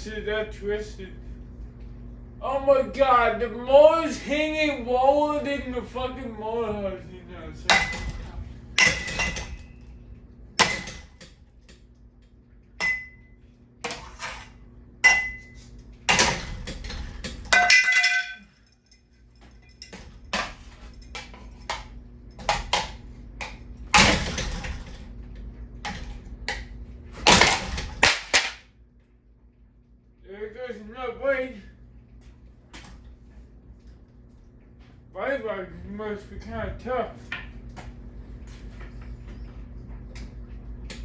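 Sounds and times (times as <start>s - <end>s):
steady low hum: 0.0s - 41.0s
metallic bangs and clanks: 7.6s - 9.8s.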